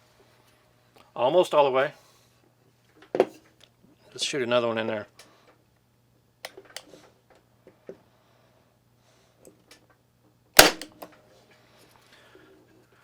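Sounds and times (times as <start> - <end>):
nail gun sharp bang: 10.6 - 10.9.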